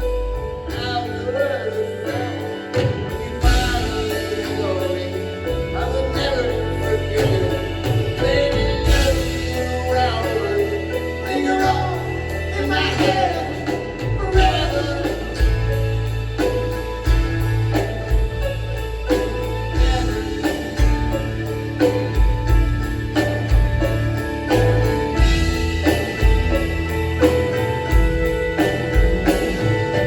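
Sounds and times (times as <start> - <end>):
person singing: 0.0 - 16.7, 19.0 - 22.6
rock band playing live: 0.0 - 30.0.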